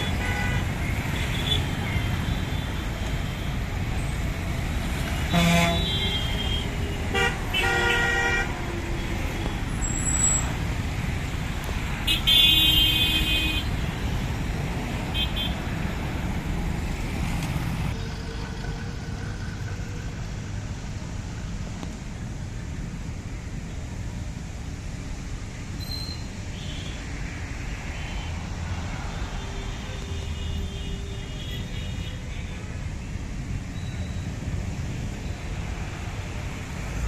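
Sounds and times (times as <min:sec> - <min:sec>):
vehicle horns tooting: 0:00.0 - 0:04.2, 0:05.1 - 0:10.5, 0:12.0 - 0:14.1
road traffic noise: 0:00.0 - 0:37.0.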